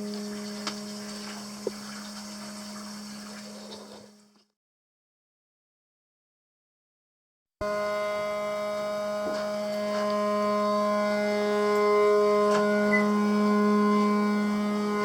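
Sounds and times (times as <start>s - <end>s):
droning hum with overtones: 0.0s - 4.2s, 7.6s - 15.0s.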